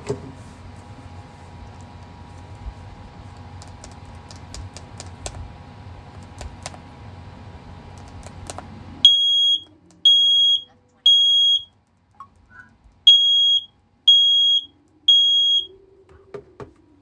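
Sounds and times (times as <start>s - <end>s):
smoke alarm beeping: 9.0s - 11.7s, 13.1s - 15.8s.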